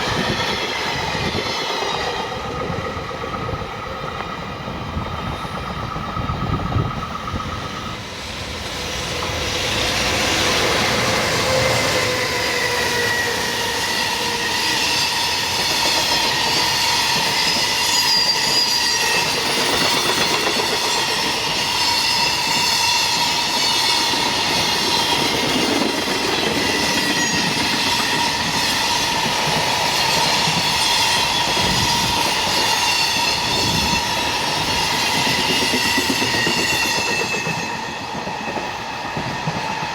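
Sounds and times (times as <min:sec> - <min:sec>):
high-pitched train wheel squeal: 0:00.0 - 0:39.9.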